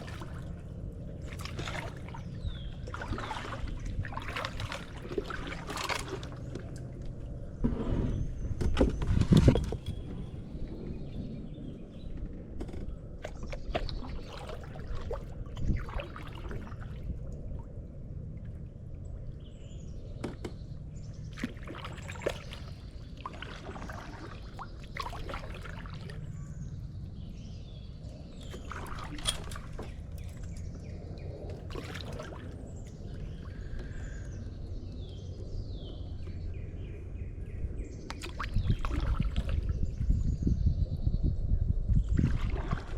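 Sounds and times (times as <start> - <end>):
birds chirping: 0.0 - 5.4, 19.1 - 42.2
water splashes and drips: 0.0 - 7.3, 13.2 - 19.0, 21.2 - 26.4, 28.4 - 34.3, 38.1 - 40.2, 42.0 - 42.9
paddle strokes through water: 0.0 - 11.6, 12.2 - 34.5, 38.1 - 40.4, 42.0 - 42.9.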